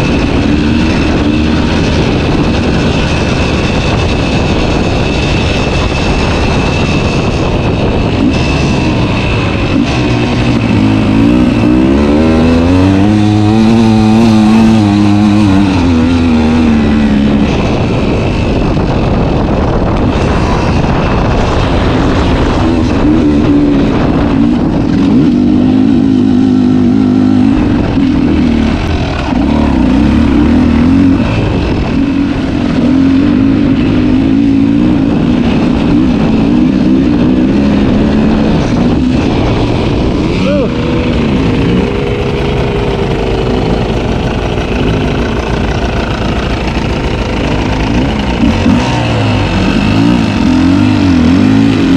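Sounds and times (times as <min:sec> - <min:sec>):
dirt bike engine revving: 0:00.0 - 0:51.9.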